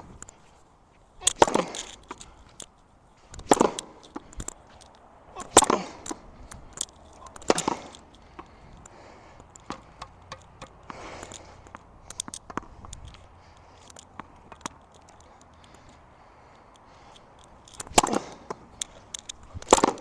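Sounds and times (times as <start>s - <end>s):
small scattered clicks: 1.3s - 20.0s
tennis ball hit against wall: 7.2s - 8.5s, 9.6s - 11.0s, 19.7s - 20.0s.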